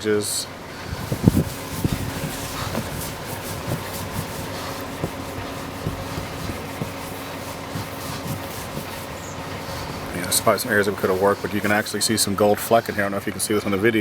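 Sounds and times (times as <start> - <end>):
steady mechanical hum: 0.0 - 14.0
light clicks and knocks: 0.8 - 11.8.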